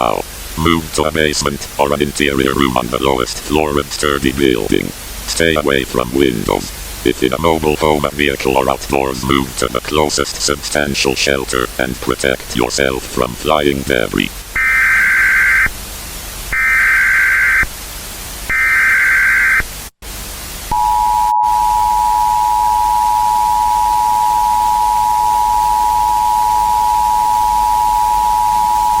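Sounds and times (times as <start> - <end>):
static hiss: 0.0 - 29.0
two-tone attention signal: 20.7 - 29.0.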